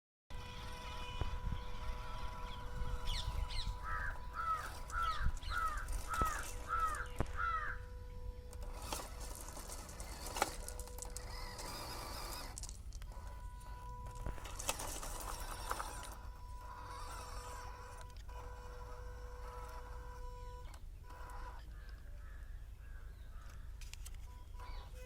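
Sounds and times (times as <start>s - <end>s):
steady low rumble: 0.3s - 20.6s
faint constant hum: 0.3s - 25.0s
bird calling: 0.6s - 8.5s, 20.4s - 23.8s.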